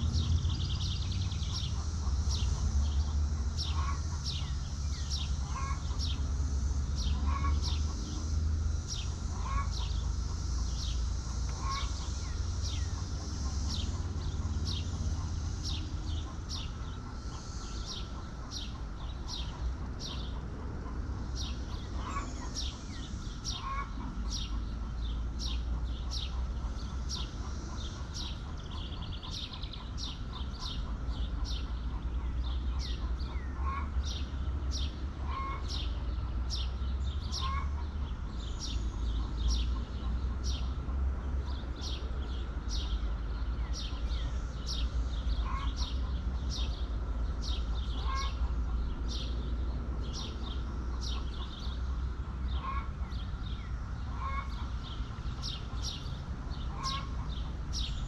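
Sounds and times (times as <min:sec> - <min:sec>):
steady low rumble: 0:00.0 - 0:34.2
hens calling softly: 0:05.4 - 0:06.0, 0:07.1 - 0:08.1, 0:09.2 - 0:15.3, 0:16.2 - 0:24.8, 0:25.7 - 0:34.1, 0:35.2 - 0:36.4, 0:37.3 - 0:38.0, 0:45.4 - 0:46.4, 0:47.7 - 0:49.0, 0:52.5 - 0:53.2, 0:54.0 - 0:56.0, 0:56.6 - 0:57.7
small bird chirping: 0:06.9 - 0:20.5.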